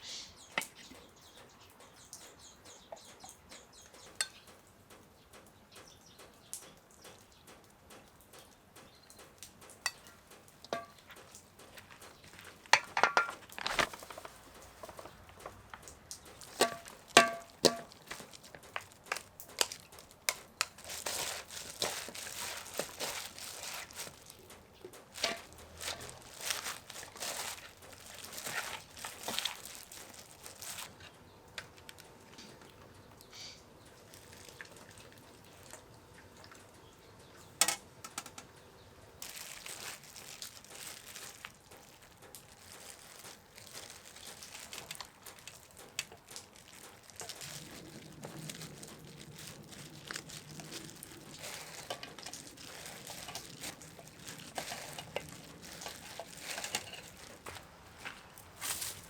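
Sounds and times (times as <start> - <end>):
rustling and crinkling: 9.2 - 33.0, 33.8 - 36.8, 37.4 - 59.0
dishware clinking: 16.6 - 18.0.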